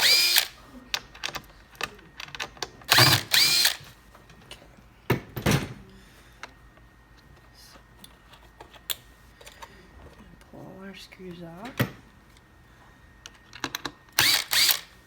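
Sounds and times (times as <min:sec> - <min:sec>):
power drill backing screws out: 0:00.0 - 0:00.5, 0:02.9 - 0:03.8, 0:14.2 - 0:14.9.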